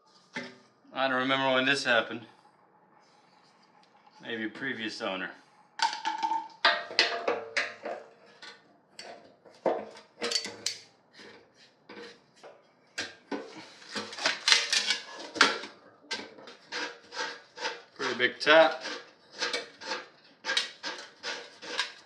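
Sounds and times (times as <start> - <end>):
metal tools clicking and clinking: 10.2 - 10.9.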